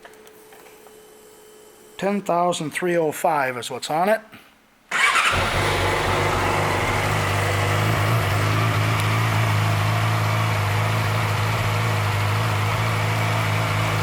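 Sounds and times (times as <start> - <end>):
motorcycle engine idling: 5.3 - 14.0.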